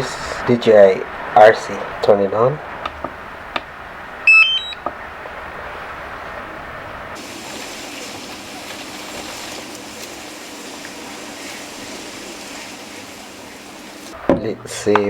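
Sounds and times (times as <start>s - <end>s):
steady hiss: 7.2s - 14.9s.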